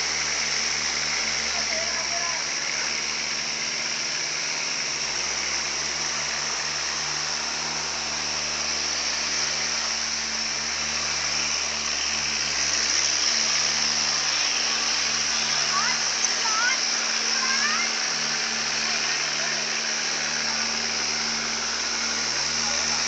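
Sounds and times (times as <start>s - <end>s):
water rushing: 0.0s - 23.0s.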